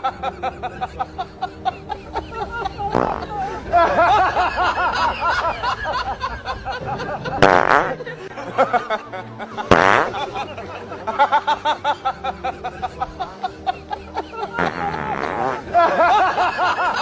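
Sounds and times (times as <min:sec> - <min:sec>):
loud fart noises: 0:02.9 - 0:03.4, 0:07.4 - 0:08.1, 0:09.7 - 0:10.4, 0:14.6 - 0:15.7.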